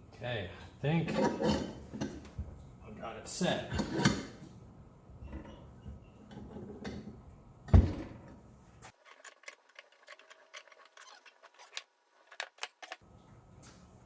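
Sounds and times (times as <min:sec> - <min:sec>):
heavy metal clunk: 0:06.4 - 0:08.4.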